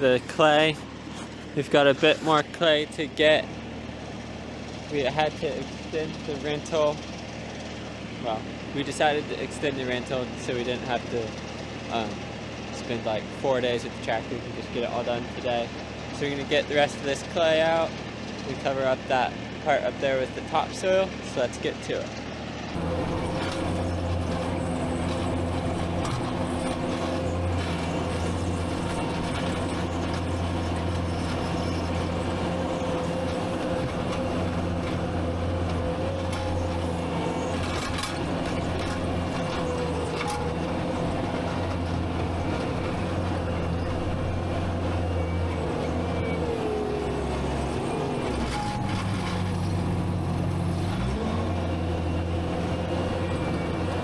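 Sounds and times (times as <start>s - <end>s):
skid steer engine at high revs: 0.0s - 54.0s.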